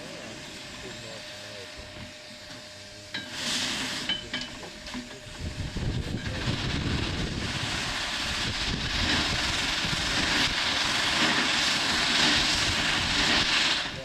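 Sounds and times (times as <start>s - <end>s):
steam hissing: 0.0s - 14.0s
low rumble: 5.3s - 14.0s.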